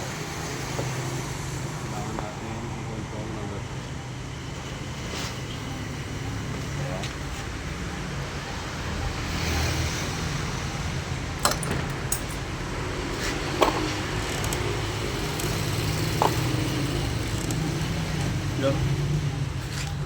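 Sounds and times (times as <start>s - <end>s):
car engine idling: 0.0s - 20.0s
sharp metallic clicks: 13.6s - 18.4s.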